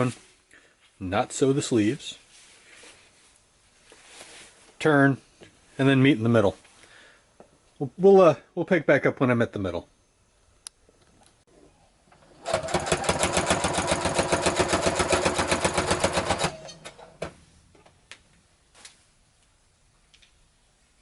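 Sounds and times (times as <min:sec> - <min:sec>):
sewing machine stitching: 0:12.2 - 0:17.3.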